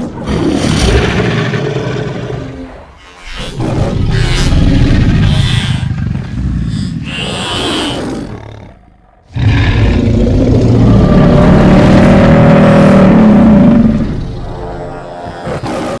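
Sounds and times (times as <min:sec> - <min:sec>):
creature roar: 0:06.6 - 0:16.0.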